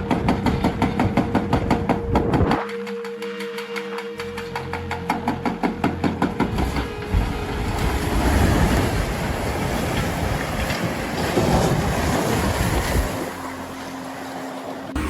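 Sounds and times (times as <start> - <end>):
engine hum: 0.0 - 15.0
heavy machinery working: 0.0 - 15.0
debris crashing down: 6.5 - 13.3.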